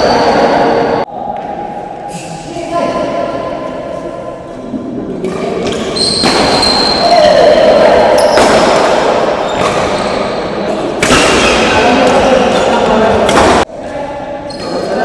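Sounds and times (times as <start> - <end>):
crowd noise: 0.0 - 15.0
racket hitting shuttlecock: 5.2 - 7.0, 8.2 - 13.7
shoe squeak on court: 5.7 - 7.2, 14.5 - 15.0.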